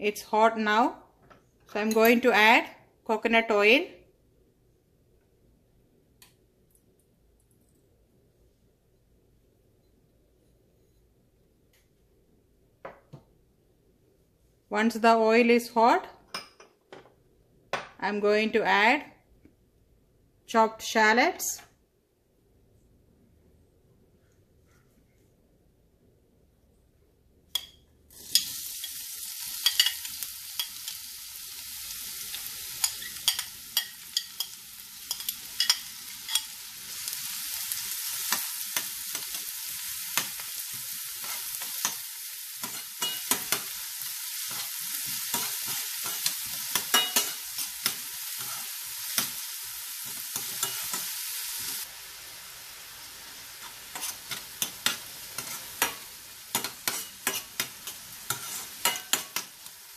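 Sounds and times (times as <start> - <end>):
shallots sizzling in oil: 27.6 - 59.9
spatula scraping a pan: 40.1 - 42.0, 44.4 - 49.4, 50.0 - 51.8, 53.6 - 59.5.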